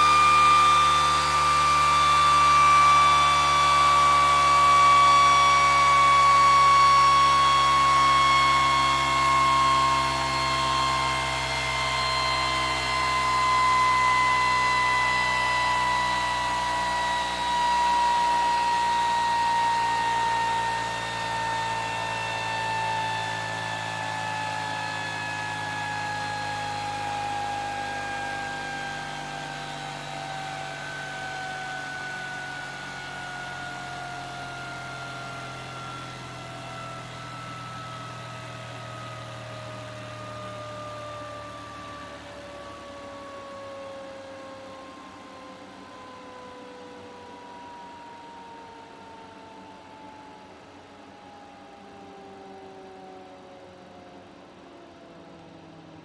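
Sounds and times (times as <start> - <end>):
pulse motor whining: 0.0 - 43.9.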